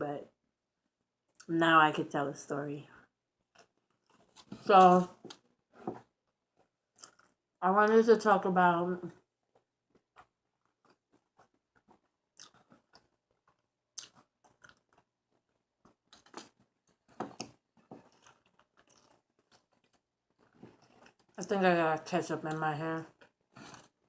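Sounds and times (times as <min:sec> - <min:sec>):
chewing and biting food: 0:06.9 - 0:07.4, 0:09.5 - 0:21.4.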